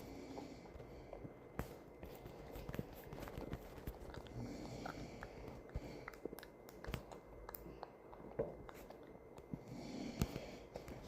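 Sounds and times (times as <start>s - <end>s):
person snoring softly: 0.0s - 1.3s, 4.2s - 6.2s, 9.6s - 11.0s.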